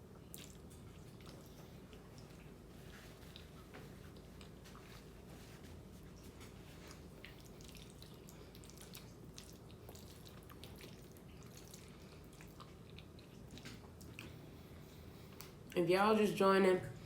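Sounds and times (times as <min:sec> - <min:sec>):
low room hum: 0:00.0 - 0:17.0
wet mouth clicks and chewing: 0:00.1 - 0:02.6, 0:06.8 - 0:14.5.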